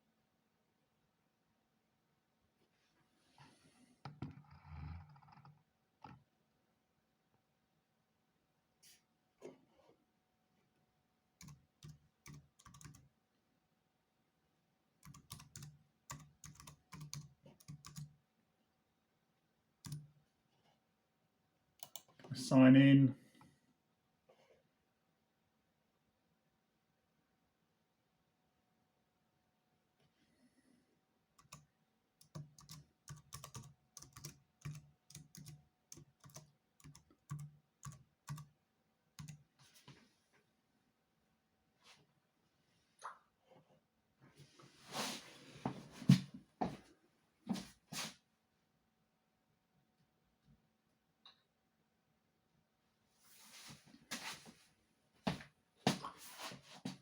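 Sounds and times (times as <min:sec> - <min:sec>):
laptop keyboard typing: 0:11.4 - 0:13.1, 0:15.0 - 0:18.2, 0:19.8 - 0:20.2, 0:21.8 - 0:22.1, 0:31.4 - 0:38.6, 0:39.2 - 0:39.5.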